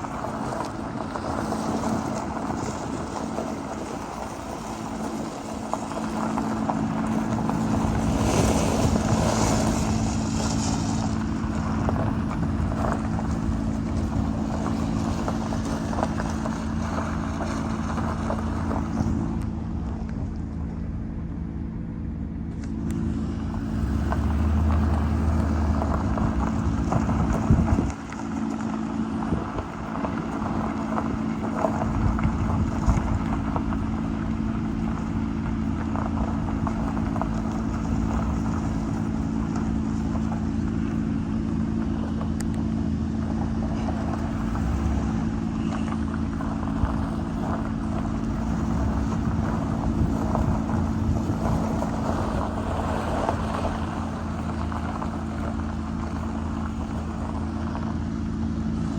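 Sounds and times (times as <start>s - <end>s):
wind noise on microphone: 0.0s - 20.7s, 23.2s - 41.2s, 43.1s - 58.2s
vehicle engine running: 0.0s - 58.9s.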